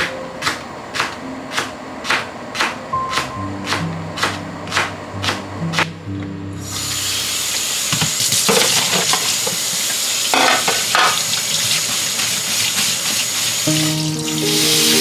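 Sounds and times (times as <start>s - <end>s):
food sizzling in a pan: 6.6s - 15.0s.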